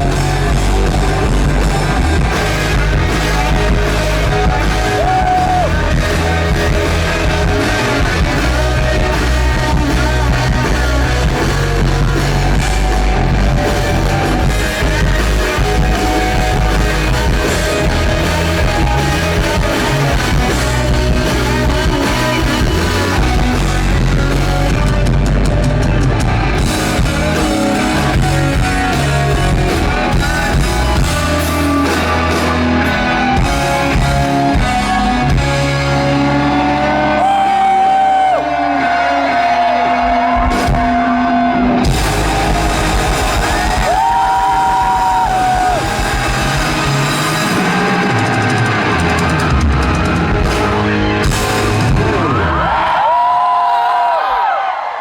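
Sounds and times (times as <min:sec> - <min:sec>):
person singing: 0:00.0 - 0:13.0
live rock band playing: 0:00.0 - 0:53.6.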